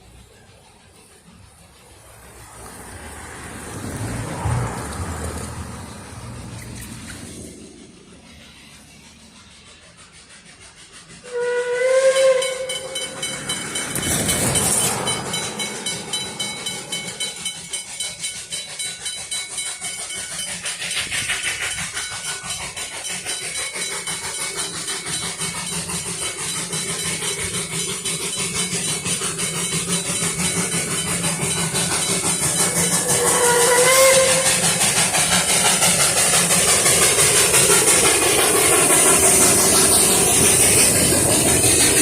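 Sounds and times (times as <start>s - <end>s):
steam hissing: 0.0s - 42.0s
steam locomotive chuffing: 0.0s - 42.0s
steam locomotive whistle: 11.0s - 14.1s, 32.0s - 35.4s.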